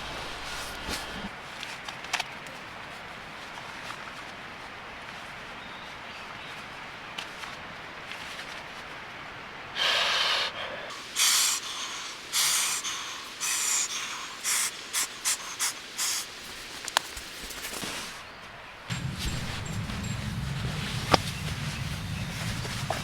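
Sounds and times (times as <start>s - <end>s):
airy puffs of breath: 9.8s - 16.8s.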